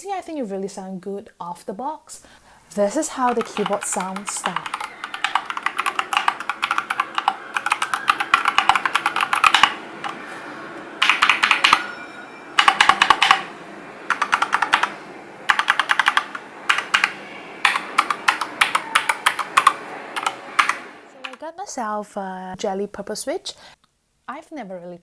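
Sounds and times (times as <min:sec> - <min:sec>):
mechanical keyboard typing: 0:02.7 - 0:10.2, 0:11.0 - 0:11.8, 0:12.6 - 0:13.5, 0:14.1 - 0:21.4.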